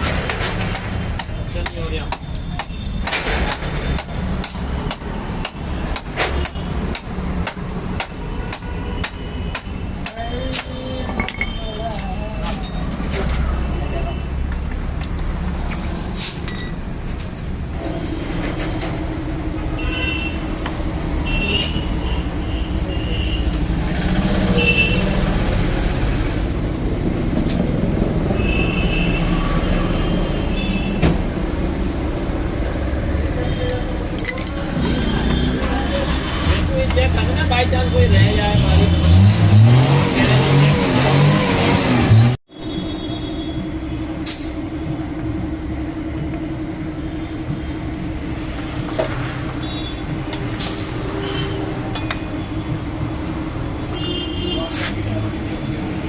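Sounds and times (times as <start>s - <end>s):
low rumble of engines: 0.0s - 56.0s
hammer striking metal: 50.2s - 52.4s.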